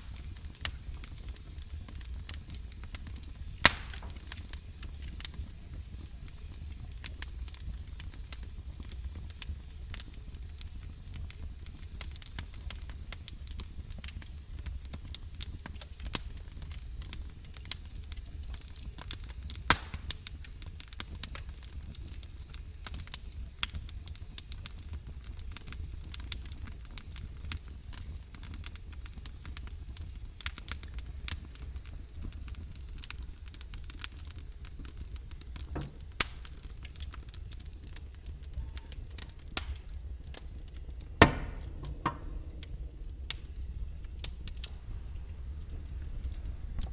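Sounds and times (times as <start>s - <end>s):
logs crackling in a fireplace: 0.0s - 46.9s
loud fire pops: 0.0s - 46.9s
low rumble: 38.4s - 46.9s.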